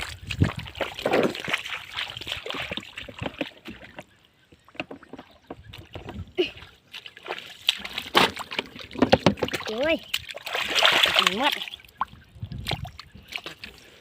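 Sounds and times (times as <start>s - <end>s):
hands splashing in muddy water: 0.0s - 3.8s, 6.6s - 14.0s.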